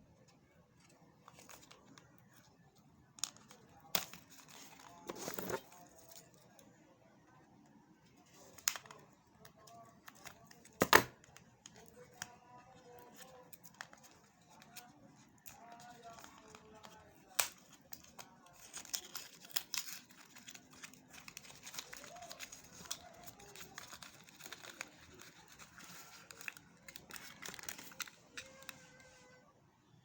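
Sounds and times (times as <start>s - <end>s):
packaging crinkling and tearing: 11.9s - 28.8s.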